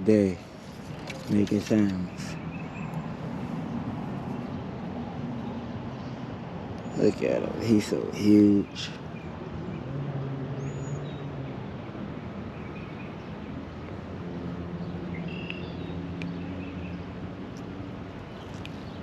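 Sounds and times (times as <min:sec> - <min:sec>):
faint bird chirps: 0:15.2 - 0:17.0
light clicks: 0:18.5 - 0:18.8.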